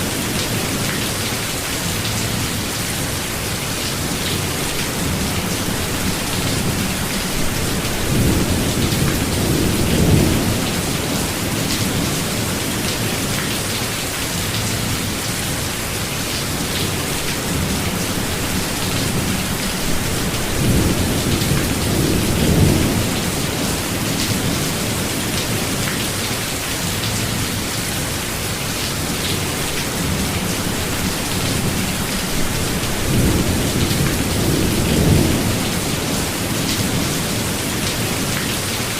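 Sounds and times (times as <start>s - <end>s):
steady rain falling: 0.0s - 38.9s
low thunder rumbles: 5.0s - 12.8s, 17.4s - 25.4s, 29.8s - 37.8s.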